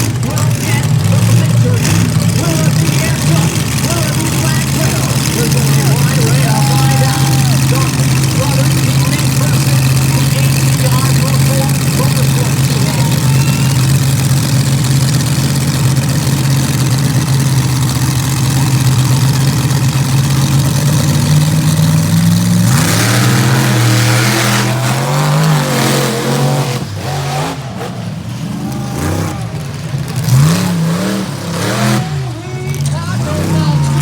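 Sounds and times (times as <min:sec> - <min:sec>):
monster truck engines revving: 0:00.0 - 0:34.0.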